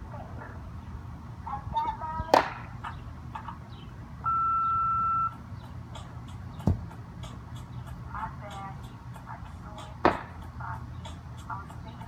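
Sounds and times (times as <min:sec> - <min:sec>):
electronic beep: 0:04.2 - 0:05.4
sharp knock with low thud: 0:06.6 - 0:06.9, 0:10.0 - 0:10.4.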